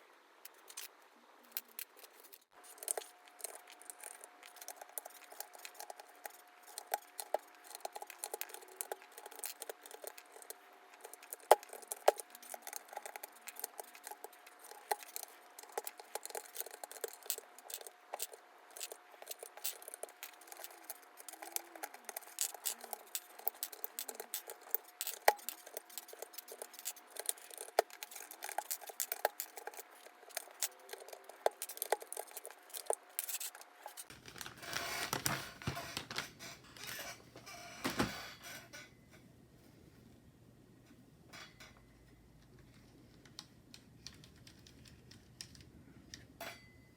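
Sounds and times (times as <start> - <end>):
plastic keycaps clicking: 43.2 - 46.3.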